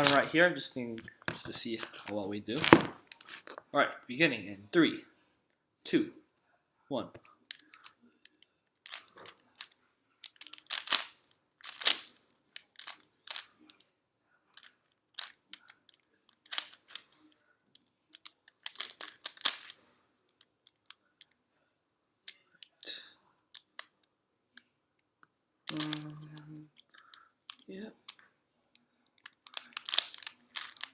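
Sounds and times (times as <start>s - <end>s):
plastic puzzle cube clicking: 8.8s - 13.8s, 14.5s - 17.1s, 18.1s - 19.8s, 25.7s - 28.2s, 29.1s - 30.9s.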